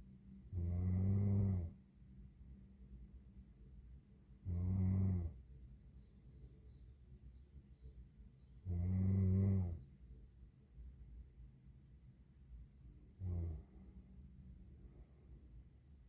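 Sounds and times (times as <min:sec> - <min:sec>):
woman snoring: 0:00.6 - 0:01.7, 0:04.5 - 0:05.3.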